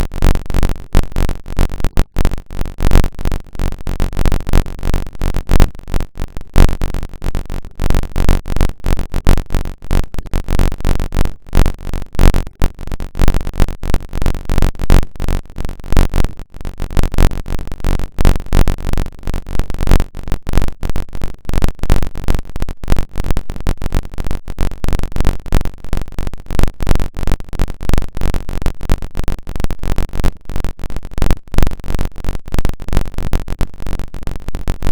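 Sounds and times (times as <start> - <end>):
glitchy stuttering noise: 0.0 - 16.3.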